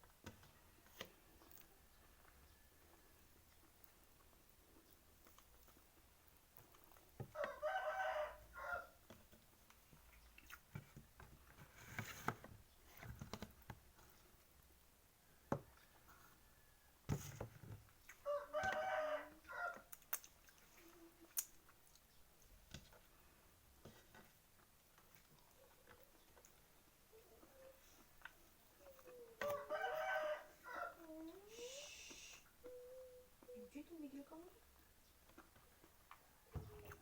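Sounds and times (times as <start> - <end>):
rooster crowing: 7.4 - 9.0, 18.3 - 19.8, 29.4 - 31.0.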